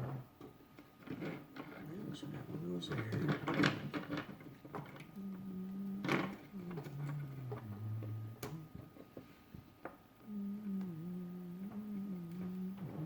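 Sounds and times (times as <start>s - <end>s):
clicks and rustles of parts: 0.4s - 5.2s
person humming low notes: 5.0s - 9.0s, 10.2s - 13.0s.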